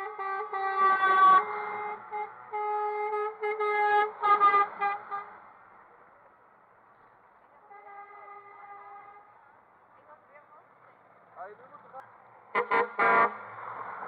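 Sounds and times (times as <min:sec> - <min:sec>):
truck air horn blasts: 0:00.0 - 0:05.3, 0:07.7 - 0:09.3, 0:12.5 - 0:13.5.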